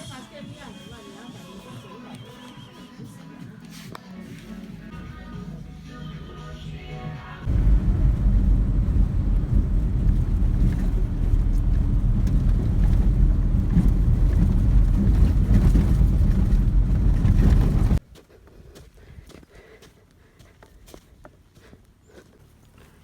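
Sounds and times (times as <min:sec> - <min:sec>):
vehicle rumbling: 0:07.4 - 0:18.0.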